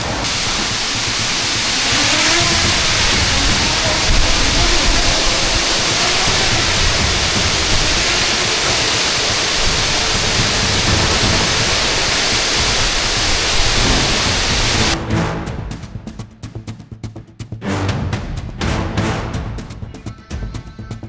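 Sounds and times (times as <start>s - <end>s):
waterfall roaring: 0.0s - 15.0s.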